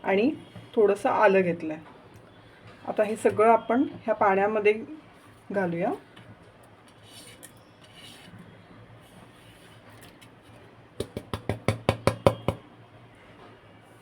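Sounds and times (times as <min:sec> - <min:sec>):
utensil tapping steel pot: 0:11.0 - 0:12.6.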